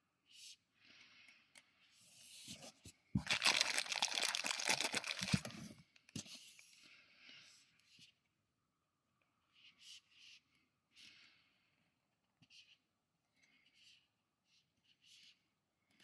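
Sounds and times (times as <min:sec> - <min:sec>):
rustling and crinkling: 0:02.4 - 0:06.5.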